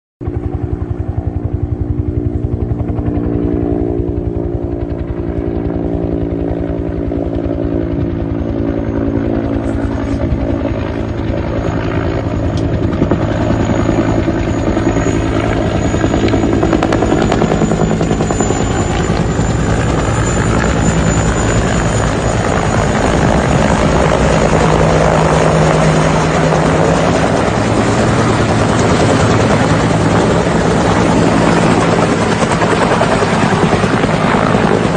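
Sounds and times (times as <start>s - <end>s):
engine drone: 0.2s - 34.9s
helicopter rotor beating: 0.2s - 34.9s.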